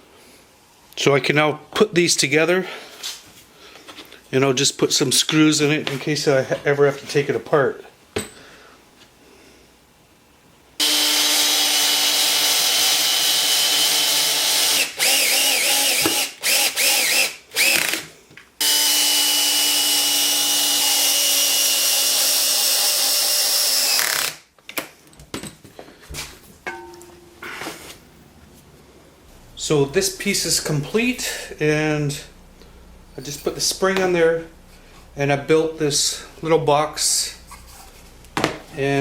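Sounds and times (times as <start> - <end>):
power drill driving screws: 10.8 - 24.4.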